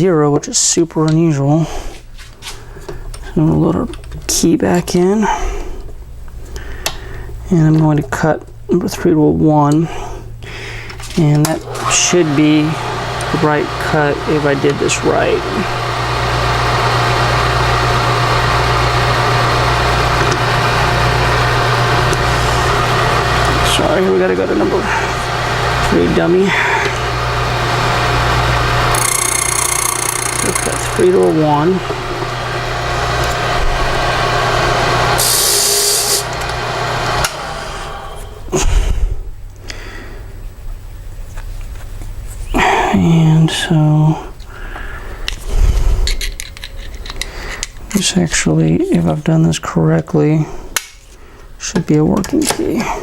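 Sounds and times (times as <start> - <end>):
electric motor humming: 11.4 - 38.6
key-cutting machine running: 11.6 - 38.5
cutter high hiss: 35.1 - 36.4.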